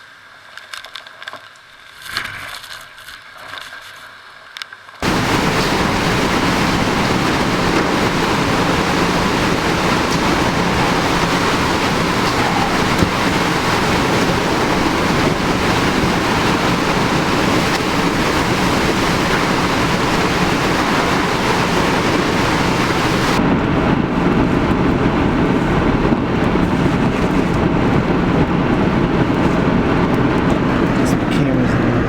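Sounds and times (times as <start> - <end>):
strong wind battering microphone: 5.0 - 32.0.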